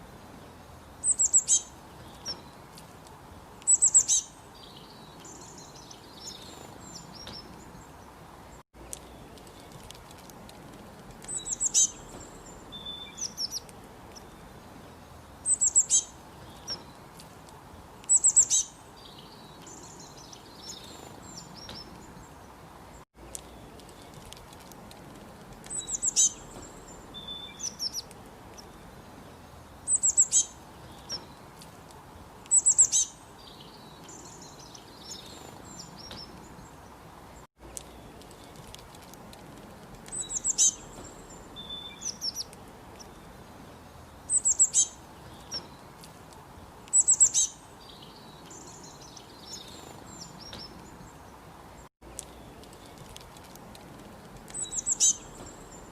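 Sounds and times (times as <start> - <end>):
faint steady hiss: 0.0 - 55.9
small birds chirping: 0.0 - 55.9.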